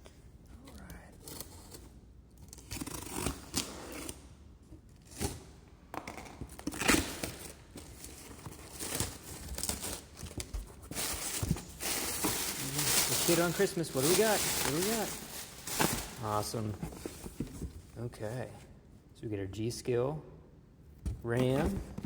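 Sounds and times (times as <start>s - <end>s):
plastic and cardboard tearing: 1.3s - 4.3s, 6.4s - 17.4s.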